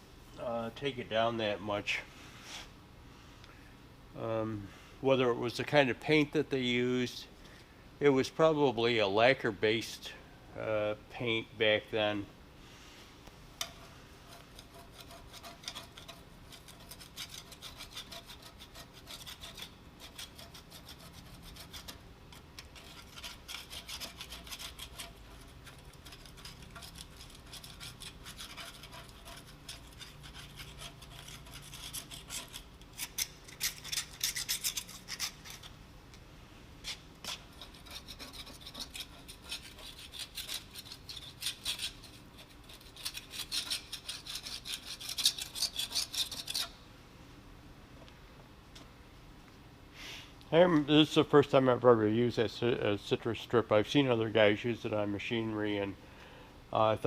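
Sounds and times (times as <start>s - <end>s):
scraper rasping on paint: 14.2s - 35.7s, 36.8s - 46.7s.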